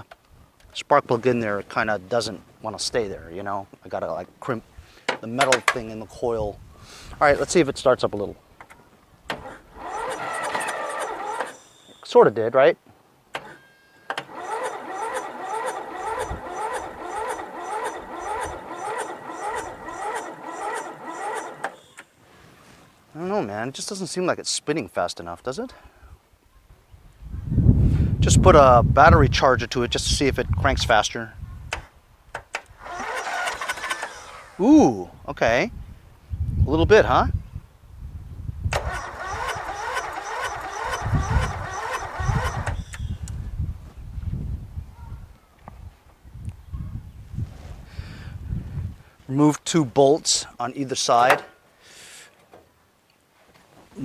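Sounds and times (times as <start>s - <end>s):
electric starter cranking engine: 9.4s - 12.0s, 13.4s - 22.0s, 32.8s - 34.7s, 38.7s - 43.1s.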